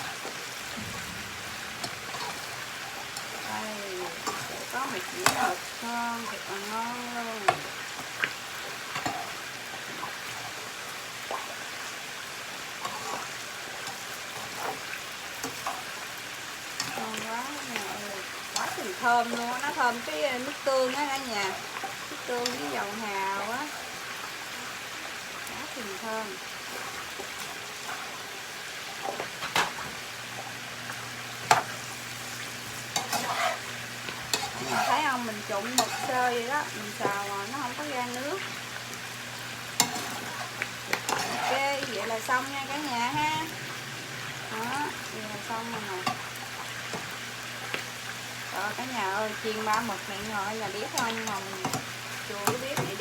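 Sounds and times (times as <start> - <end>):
food sizzling in a pan: 0.0 - 53.0
spatula striking a pan: 0.8 - 3.5
spatula scraping a pan: 12.8 - 16.0, 31.5 - 38.2, 39.8 - 43.5.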